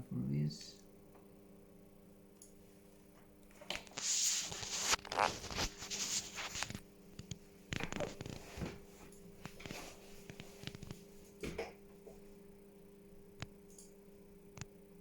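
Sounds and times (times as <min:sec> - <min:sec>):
rustling and scraping: 0:03.6 - 0:11.4.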